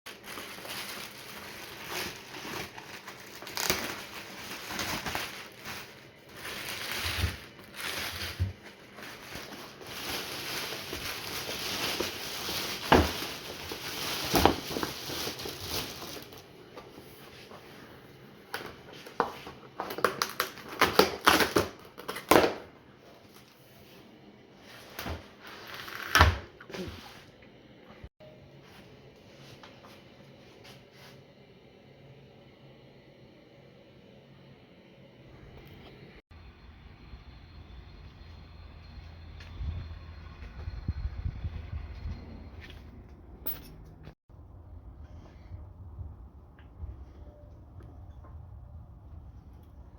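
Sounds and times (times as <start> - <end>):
crinkling and rustling: 0.1 - 17.8.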